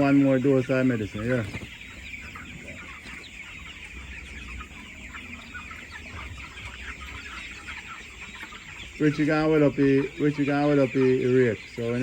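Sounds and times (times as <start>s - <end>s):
chickens cheeping and clucking: 0.0s - 12.0s.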